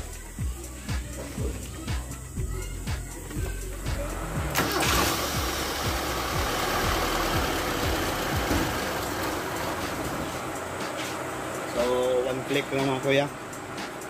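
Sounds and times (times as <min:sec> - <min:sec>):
car engine cranking and running: 0:03.3 - 0:14.0.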